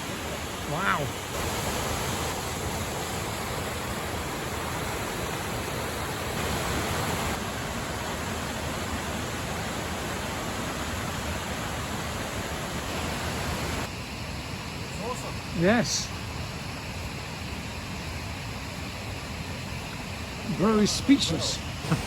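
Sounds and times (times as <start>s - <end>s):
waterfall rushing: 0.0s - 8.1s, 20.3s - 22.0s.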